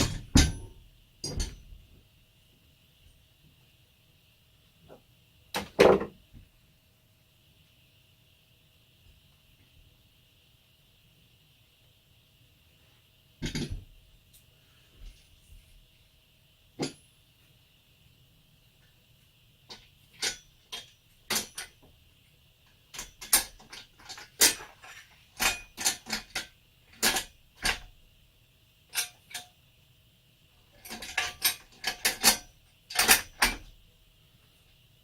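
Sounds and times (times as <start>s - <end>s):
metal clinks and knocks: 0.0s - 1.7s.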